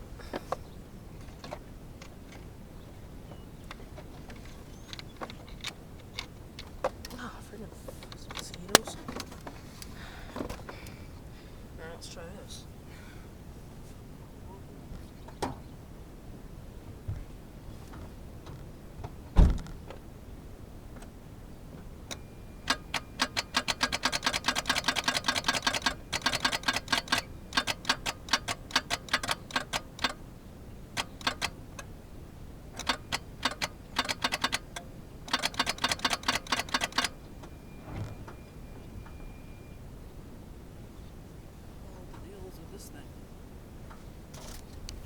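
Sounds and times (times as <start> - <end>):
starter solenoid clicking: 0.3 - 11.0, 21.8 - 37.6
thump: 19.4 - 19.8.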